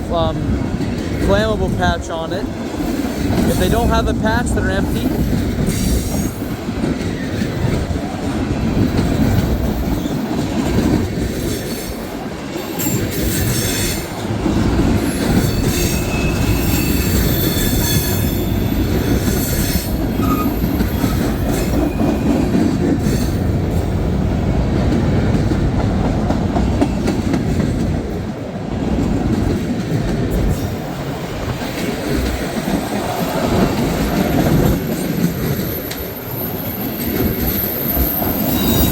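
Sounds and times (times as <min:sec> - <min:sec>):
train wheels rumbling and clacking: 0:00.0 - 0:38.9
steel wheel squeal: 0:15.0 - 0:22.5, 0:34.9 - 0:38.9.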